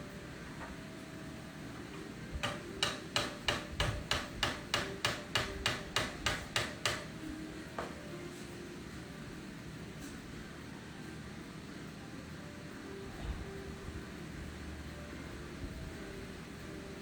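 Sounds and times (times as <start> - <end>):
steady background hiss: 0.0 - 17.0
hammer strikes: 2.4 - 7.1.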